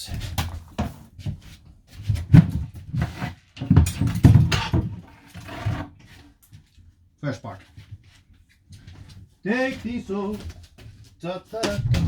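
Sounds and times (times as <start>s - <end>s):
knocks thuds and rattles: 3.6s - 5.1s, 11.6s - 12.0s.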